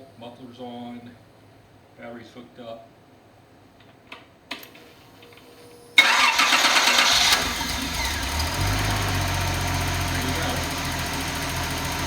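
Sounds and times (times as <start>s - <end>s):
engine idling: 6.0s - 12.0s
starter cranking: 6.0s - 12.0s.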